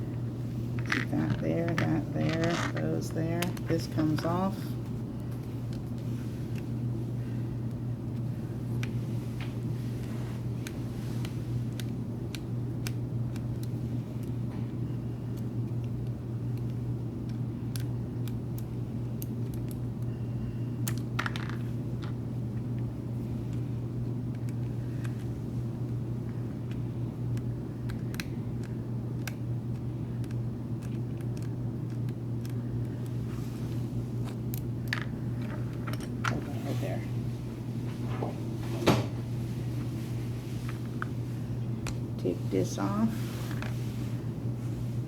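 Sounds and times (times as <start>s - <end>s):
steady low hum: 0.0s - 45.0s
clicks of small parts: 27.9s - 32.6s.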